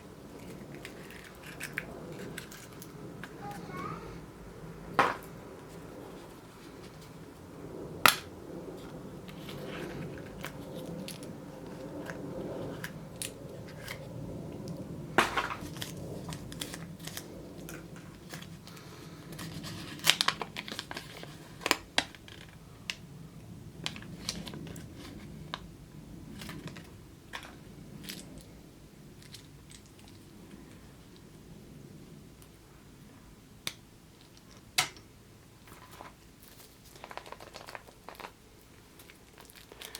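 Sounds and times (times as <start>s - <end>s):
foil wrapper crinkling: 15.2s - 22.6s, 35.6s - 39.9s
plastic egg clicks and snaps: 33.6s - 35.1s.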